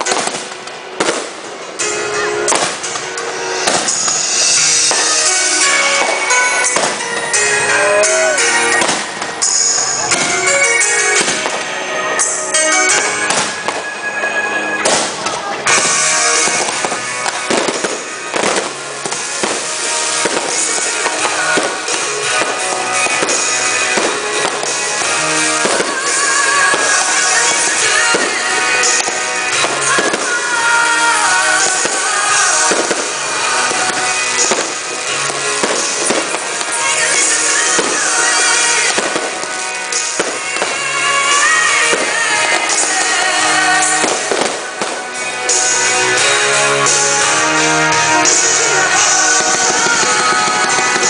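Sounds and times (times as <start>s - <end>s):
firework shells bursting: 0.0s - 14.1s, 14.8s - 51.0s
music playing: 0.0s - 51.0s
crackling hiss: 2.5s - 11.7s, 14.8s - 51.0s.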